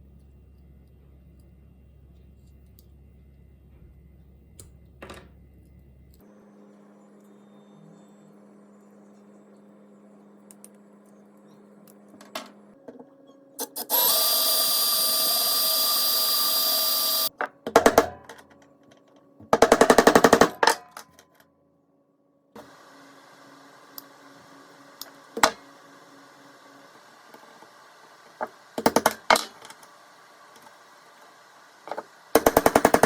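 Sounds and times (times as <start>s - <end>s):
rapid pulses of power tool: 13.6s - 17.3s
small power tool running: 13.6s - 17.3s.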